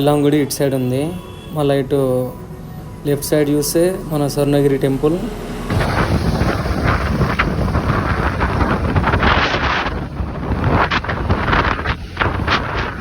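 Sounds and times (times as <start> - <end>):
wind buffeting microphone: 5.5 - 13.0.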